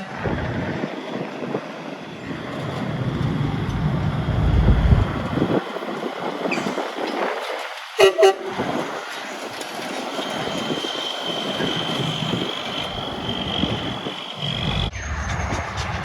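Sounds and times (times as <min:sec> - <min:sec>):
road traffic noise: 0:00.0 - 0:16.0
steady high whine: 0:02.1 - 0:05.6, 0:11.6 - 0:16.0
air horn blasts: 0:08.0 - 0:08.6.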